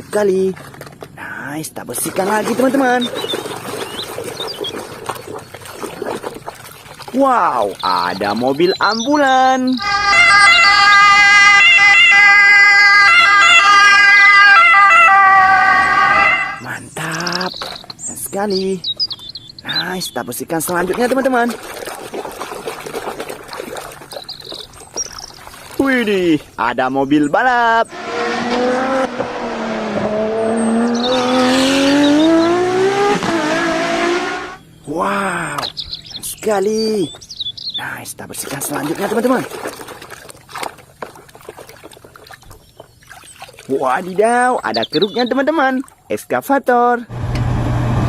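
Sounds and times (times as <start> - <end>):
ambulance siren: 9.7 - 16.7
race car engine: 27.8 - 34.6, 47.1 - 48.0.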